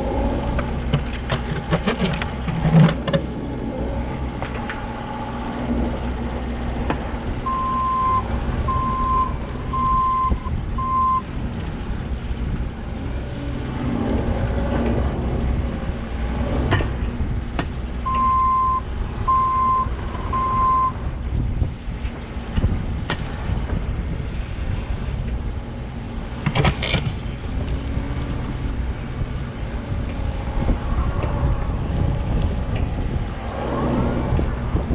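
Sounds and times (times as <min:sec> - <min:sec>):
diesel engine running: 0:00.0 - 0:34.9
backup alarm beeping: 0:07.5 - 0:11.2, 0:18.1 - 0:21.0.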